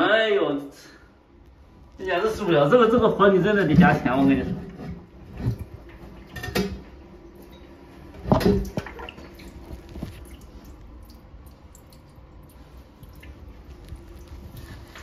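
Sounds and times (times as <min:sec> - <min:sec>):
toilet parts knocking and clattering: 0:02.8 - 0:06.9, 0:08.2 - 0:09.1
water splashing: 0:08.2 - 0:15.0.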